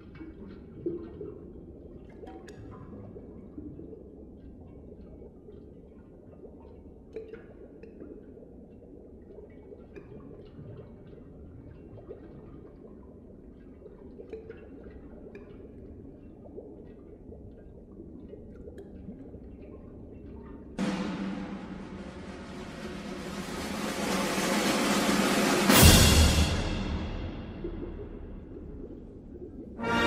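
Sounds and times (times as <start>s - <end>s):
low steady hum: 25.7s - 29.9s.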